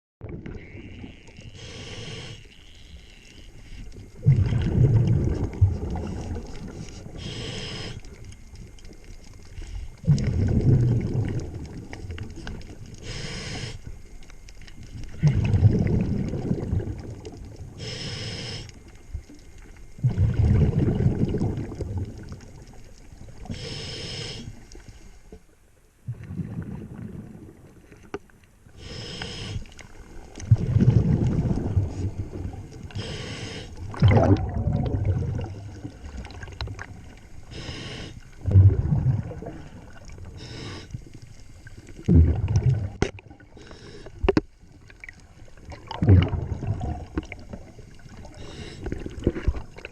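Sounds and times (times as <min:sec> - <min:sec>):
diver inhaling through regulator: 0:01.5 - 0:02.5, 0:06.0 - 0:08.1, 0:13.0 - 0:13.9, 0:17.8 - 0:18.8, 0:23.5 - 0:25.3, 0:28.8 - 0:29.8, 0:32.9 - 0:33.8, 0:37.4 - 0:38.4, 0:39.4 - 0:41.6, 0:43.5 - 0:44.3, 0:48.2 - 0:49.2
bubbling exhale underwater: 0:04.0 - 0:08.1, 0:09.4 - 0:13.8, 0:15.0 - 0:18.7, 0:20.0 - 0:24.5, 0:26.0 - 0:27.9, 0:30.4 - 0:49.9.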